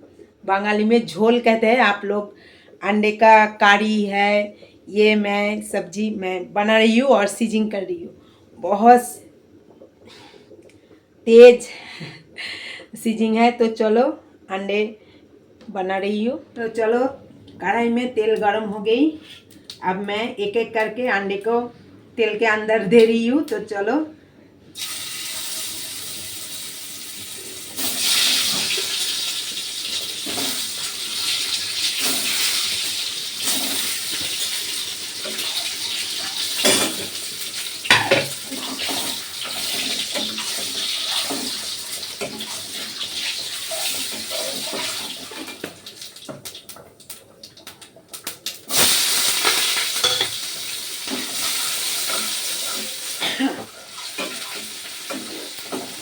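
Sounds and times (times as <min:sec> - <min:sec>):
eggs sizzling in hot oil: 0:24.8 - 0:56.0.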